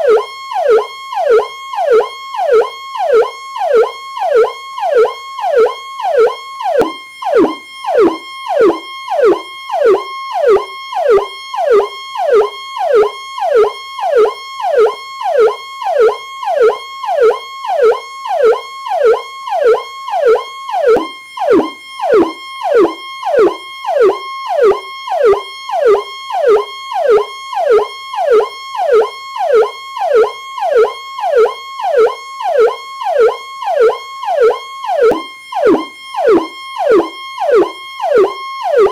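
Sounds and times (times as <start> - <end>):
police siren wailing: 0.0 - 38.9
steady high tone: 35.1 - 37.1.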